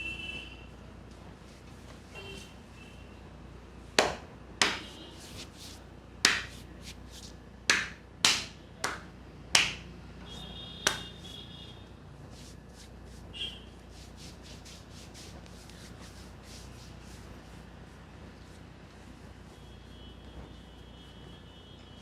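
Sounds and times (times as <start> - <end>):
hands slapping head: 4.0 - 5.5, 6.2 - 9.9, 10.9 - 11.2.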